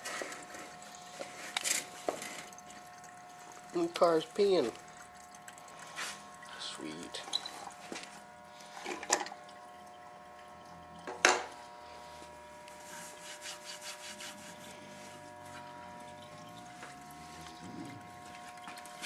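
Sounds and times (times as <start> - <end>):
faint steady hum: 0.0 - 19.0
scraping strokes: 12.7 - 15.3.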